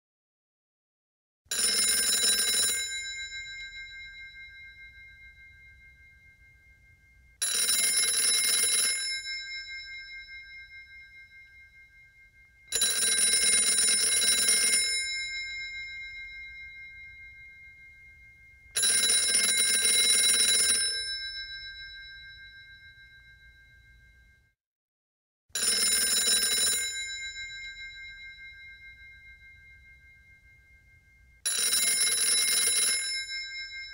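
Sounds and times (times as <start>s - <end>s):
telephone bell ringing: 1.5s - 6.4s, 7.4s - 12.0s, 12.6s - 24.1s, 25.6s - 30.7s, 31.4s - 33.9s.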